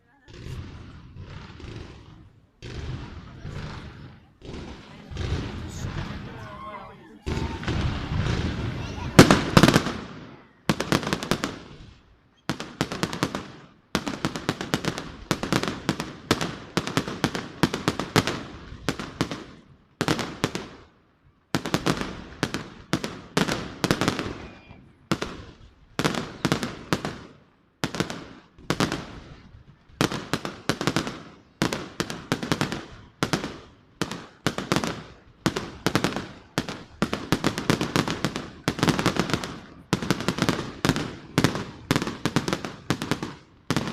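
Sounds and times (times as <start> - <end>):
fireworks crackling bursts: 0.0 - 43.9.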